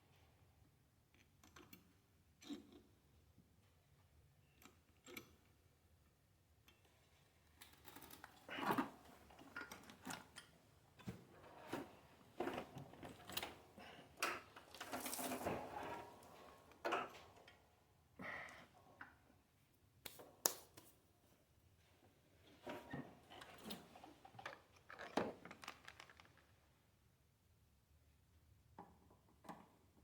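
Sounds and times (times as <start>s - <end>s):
tools and parts clicking and rustling: 7.6s - 13.6s, 14.2s - 17.6s, 22.7s - 26.5s.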